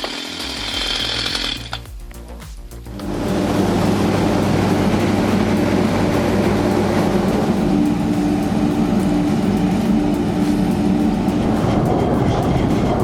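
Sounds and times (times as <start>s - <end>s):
log chipping machinery running: 0.0s - 1.8s, 3.1s - 13.0s
constant low hum: 0.5s - 13.0s.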